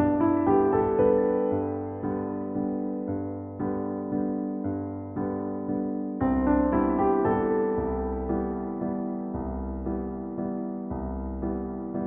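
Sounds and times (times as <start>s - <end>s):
gentle piano music: 0.0s - 12.0s.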